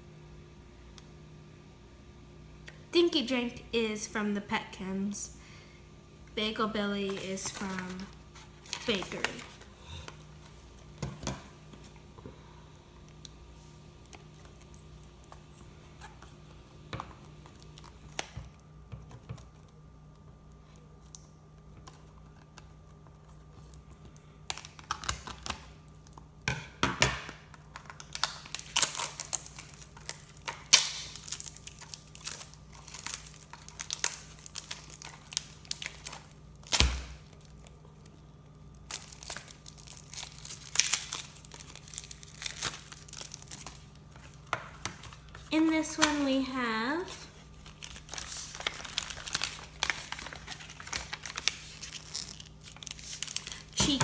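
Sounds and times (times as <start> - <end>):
packaging tearing and crinkling: 27.7 - 46.3, 47.1 - 54.0.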